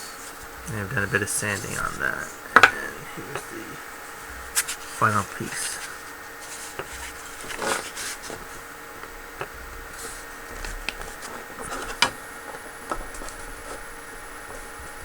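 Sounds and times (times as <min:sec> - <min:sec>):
faint room hum: 0:00.0 - 0:15.0.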